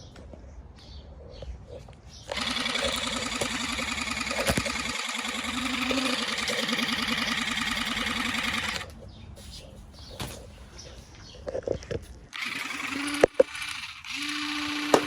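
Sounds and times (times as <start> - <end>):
water gun pump motor buzzing: 2.3 - 8.9, 12.3 - 15.0.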